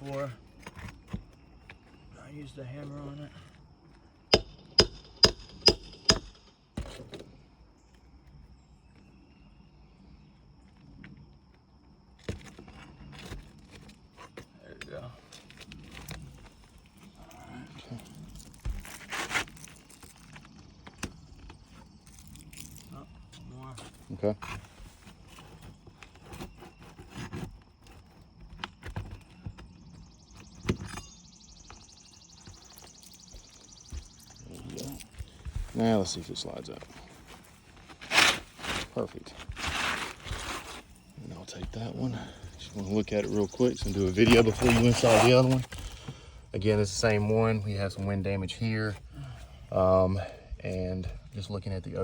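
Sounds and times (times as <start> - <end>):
hammer striking metal: 4.3 - 6.5
hand tool knocking on roof shingles: 4.4 - 7.2.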